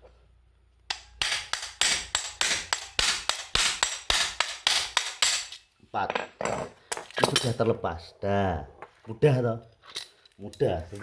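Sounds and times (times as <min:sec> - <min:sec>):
hammer striking impact driver: 0:00.9 - 0:05.6.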